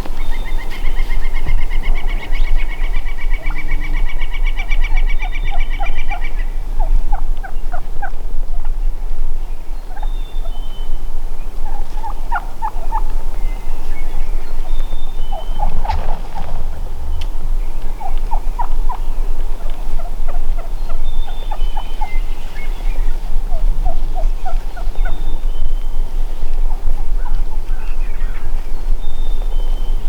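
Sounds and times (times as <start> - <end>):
steady low rumble: 0.0 - 30.0
turkeys gobbling: 11.6 - 25.3.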